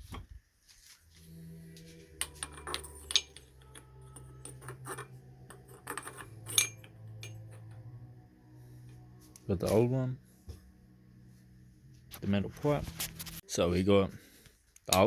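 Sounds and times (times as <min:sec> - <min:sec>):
low hum: 0:01.0 - 0:13.4
metal-on-metal clinks: 0:05.7 - 0:07.4.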